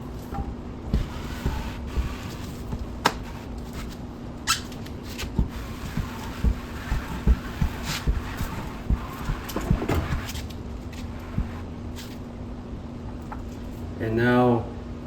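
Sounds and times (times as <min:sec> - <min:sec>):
hose squeaking through wet towel: 0:04.4 - 0:10.5.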